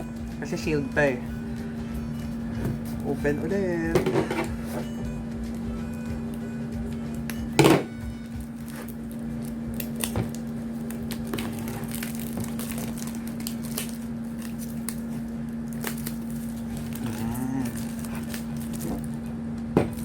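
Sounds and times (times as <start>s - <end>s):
steady low hum: 0.0s - 20.0s
plastic shrink wrap crinkling: 8.3s - 20.0s.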